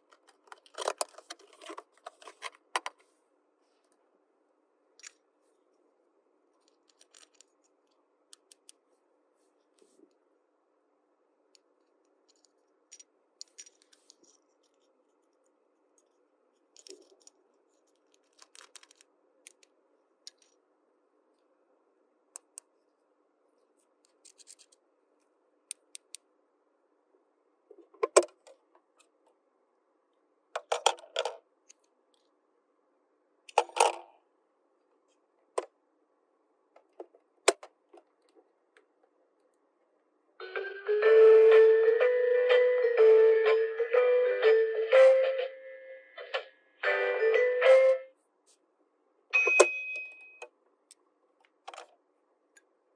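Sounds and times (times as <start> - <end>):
plastic toy pieces clicking: 6.6 - 7.7, 8.3 - 8.8, 12.3 - 14.8, 18.0 - 19.7, 25.7 - 26.2
plastic pieces clattering: 18.0 - 19.1.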